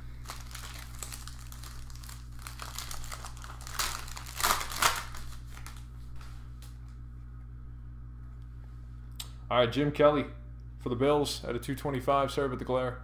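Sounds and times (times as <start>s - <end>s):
card packaging crinkling: 0.1s - 6.3s.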